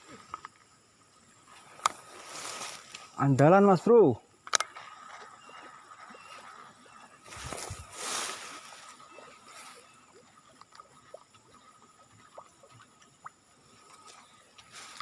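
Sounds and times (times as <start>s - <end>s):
small scattered clicks: 4.4s - 4.9s
water sloshing: 4.7s - 15.0s.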